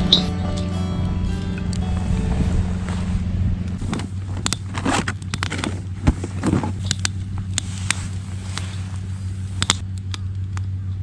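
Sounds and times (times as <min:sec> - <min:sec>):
low rumble: 0:00.0 - 0:04.8.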